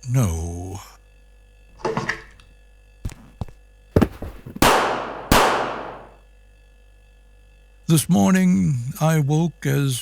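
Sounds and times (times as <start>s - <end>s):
light knocks: 1.8s - 2.4s
heavy echoing hits: 4.0s - 6.2s.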